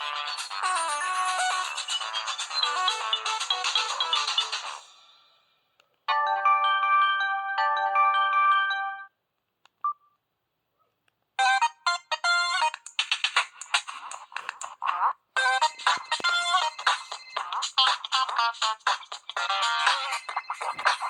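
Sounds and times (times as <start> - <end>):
phone ringtones: 15.4 - 21.0.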